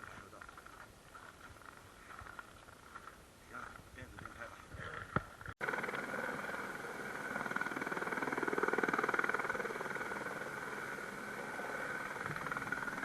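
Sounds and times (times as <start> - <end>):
helicopter engine and rotor: 5.6 - 13.0.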